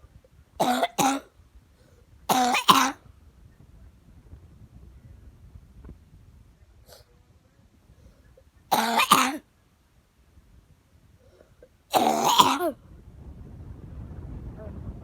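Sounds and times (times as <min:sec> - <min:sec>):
person coughing hard: 0:00.6 - 0:01.3, 0:02.3 - 0:03.0, 0:08.7 - 0:09.4, 0:11.9 - 0:12.8.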